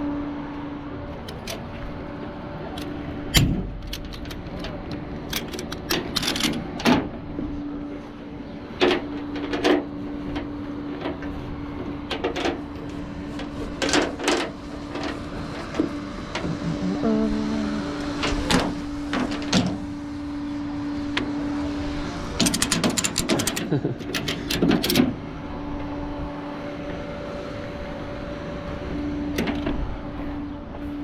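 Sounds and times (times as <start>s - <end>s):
truck engine idling: 9.0s - 24.6s.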